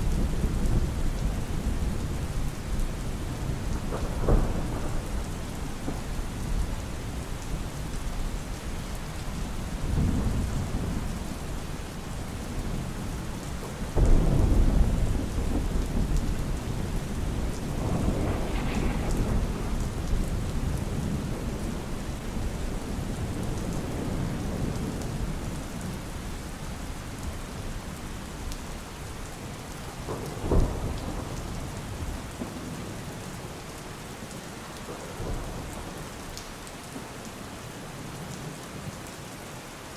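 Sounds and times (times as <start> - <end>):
thunder rumbling: 0.0 - 27.8, 29.9 - 32.8
steady rain: 0.0 - 39.9
sharp thunder crack: 14.0 - 21.9.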